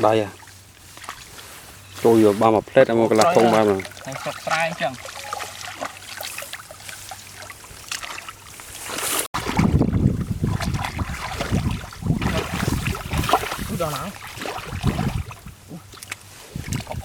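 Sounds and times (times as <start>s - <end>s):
small splashes: 0.0s - 1.8s, 2.8s - 17.0s
muddy water sloshing: 0.0s - 17.0s.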